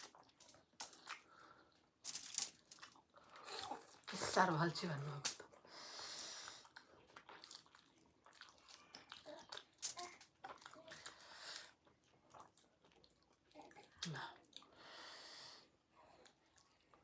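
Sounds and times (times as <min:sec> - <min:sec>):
chewing and mouth clicks: 0:06.5 - 0:14.8.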